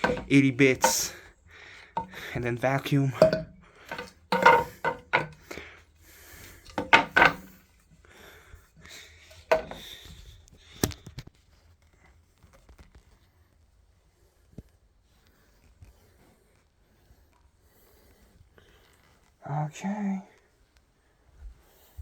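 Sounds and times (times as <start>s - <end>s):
wood scraping: 0.0s - 1.2s, 1.8s - 5.6s, 6.3s - 7.6s, 9.3s - 10.0s
wooden parts knocking: 0.0s - 1.2s, 1.9s - 5.6s, 6.6s - 7.6s, 9.4s - 9.9s.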